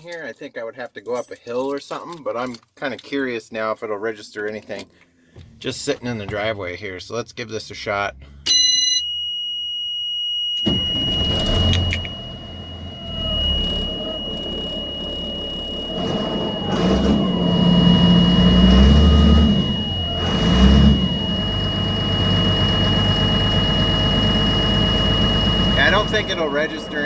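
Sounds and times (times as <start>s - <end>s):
diesel truck engine revving: 7.7s - 8.5s, 10.7s - 27.0s
high-pitched warning tone: 8.3s - 27.0s.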